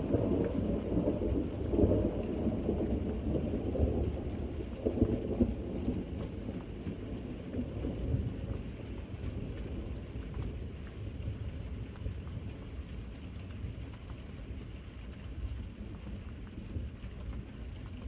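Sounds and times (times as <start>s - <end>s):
thunder rumbling: 0.0s - 10.8s
steady rain: 0.0s - 18.0s.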